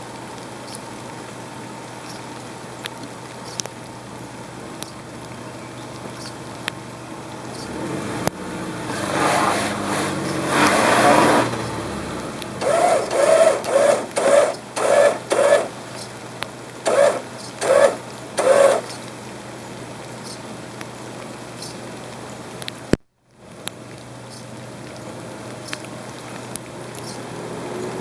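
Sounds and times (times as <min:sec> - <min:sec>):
motor running under load: 0:07.8 - 0:16.1, 0:16.8 - 0:19.0.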